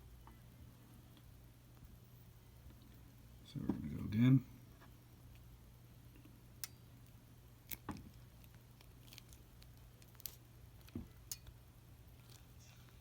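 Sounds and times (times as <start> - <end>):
wire strippers clicking and snipping: 7.6 - 11.6.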